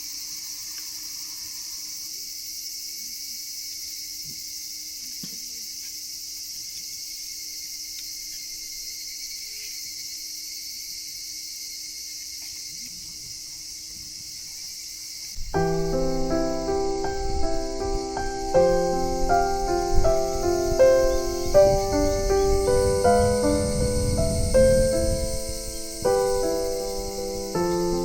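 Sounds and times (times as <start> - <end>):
crickets and insects trilling: 0.0 - 28.0
faint ticks: 0.6 - 1.1.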